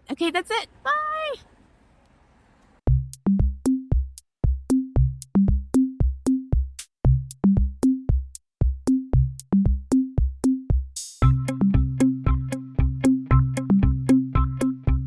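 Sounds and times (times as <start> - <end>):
short bass notes: 2.9 - 7.7, 11.2 - 15.0
drum machine beat: 2.9 - 15.0.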